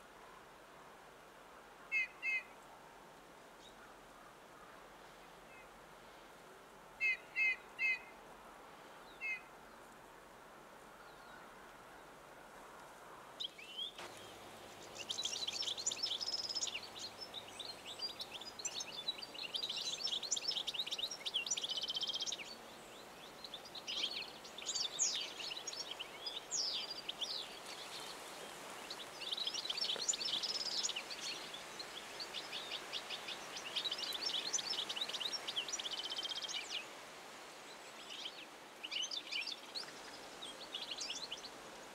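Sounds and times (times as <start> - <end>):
finch twittering song: 13.4 - 22.6, 28.9 - 36.8.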